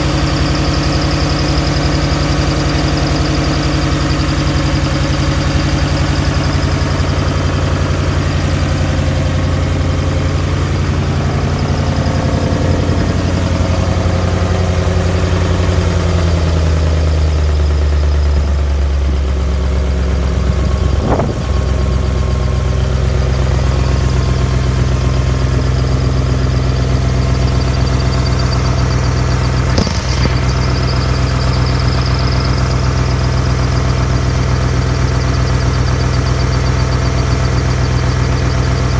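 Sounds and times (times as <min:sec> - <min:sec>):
car engine idling with ticking: 0:00.0 - 0:38.9
brief sharp sounds: 0:29.7 - 0:32.1.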